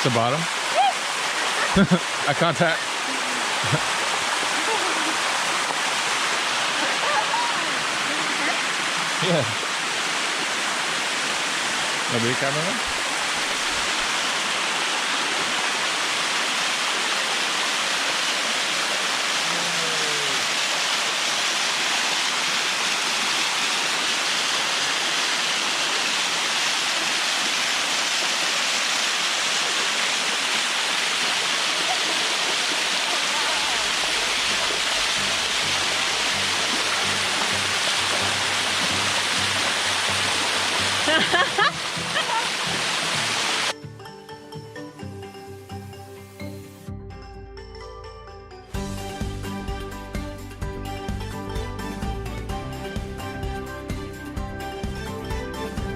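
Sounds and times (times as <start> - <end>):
waterfall rushing over rock: 0.0 - 43.8.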